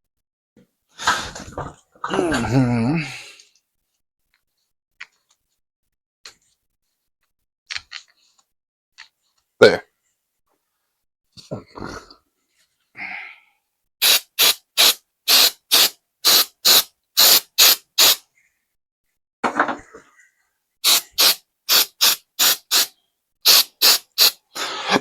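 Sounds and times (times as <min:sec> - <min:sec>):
spray bottle squirts: 0:14.0 - 0:18.2, 0:20.8 - 0:22.9, 0:23.5 - 0:24.4.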